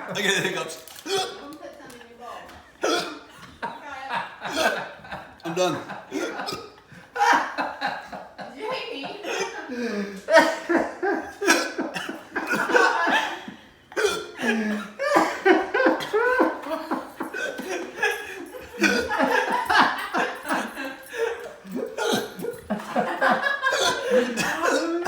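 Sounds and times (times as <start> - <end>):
people laughing: 0.0 - 25.0
man hiccuping: 1.0 - 1.4, 2.8 - 3.3, 21.7 - 22.7, 23.7 - 25.0.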